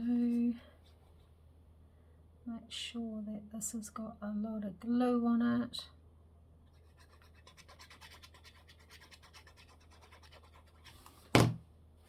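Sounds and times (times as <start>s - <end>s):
low steady hum: 0.0s - 12.0s
glue spread scratching on paper: 6.8s - 11.1s.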